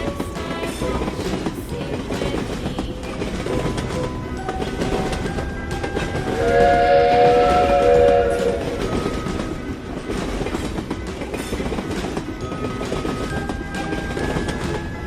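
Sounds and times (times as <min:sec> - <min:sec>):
train rumbling on rails: 0:00.0 - 0:15.0
train horn chord: 0:06.3 - 0:09.2.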